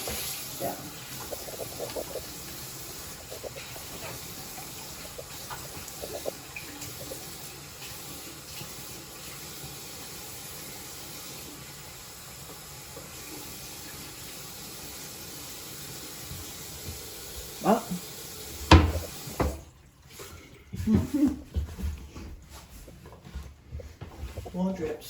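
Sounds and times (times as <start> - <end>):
faucet running into sink: 0.0 - 20.8.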